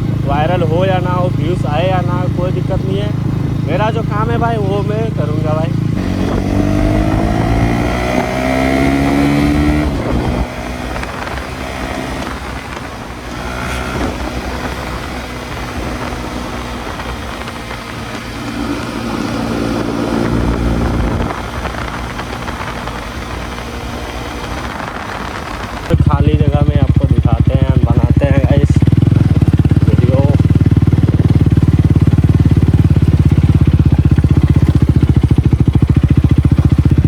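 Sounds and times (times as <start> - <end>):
motorcycle engine accelerating: 0.0 - 37.0
wind on microphone: 5.7 - 30.2.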